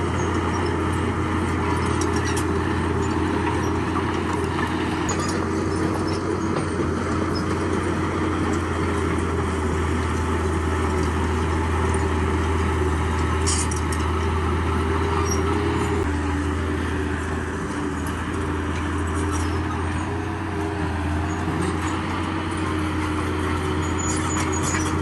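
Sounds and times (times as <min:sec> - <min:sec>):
bulldozer diesel engine running: 0:00.0 - 0:25.0
metallic clatter: 0:13.3 - 0:14.2.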